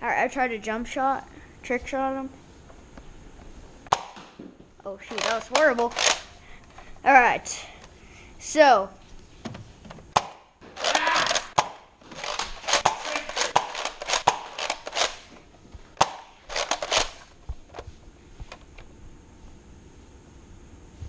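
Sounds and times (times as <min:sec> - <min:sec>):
plastic clicks and knocks of blaster: 0:05.1 - 0:06.3, 0:10.2 - 0:15.3.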